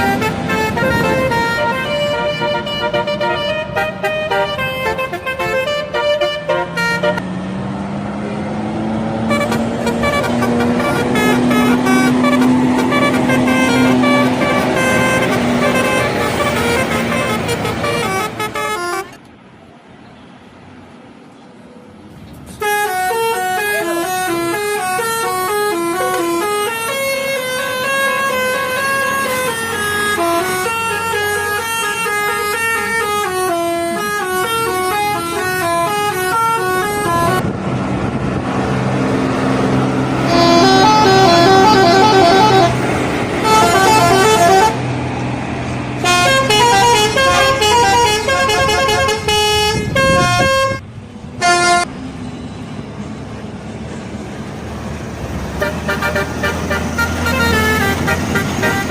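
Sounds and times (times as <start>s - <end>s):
melodic air horns: 0.0s - 7.2s, 9.2s - 19.2s, 22.6s - 37.4s, 40.2s - 44.9s, 46.0s - 50.8s, 51.4s - 51.9s, 55.6s - 58.9s
low engine drone: 35.6s - 49.7s.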